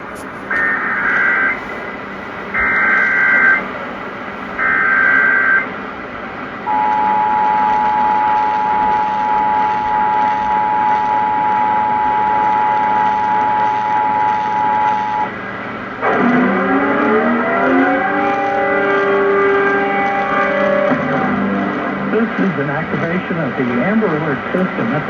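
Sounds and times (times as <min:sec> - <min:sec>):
radio static: 0:00.0 - 0:05.7, 0:09.1 - 0:25.0
two-tone attention signal: 0:00.5 - 0:01.7, 0:02.6 - 0:03.6, 0:04.6 - 0:05.7, 0:06.7 - 0:15.3.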